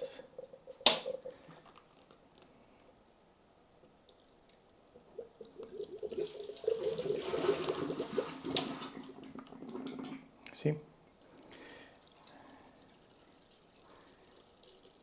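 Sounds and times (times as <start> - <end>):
liquid pouring into reservoir: 0.0 - 1.9, 4.1 - 10.3, 11.2 - 15.0.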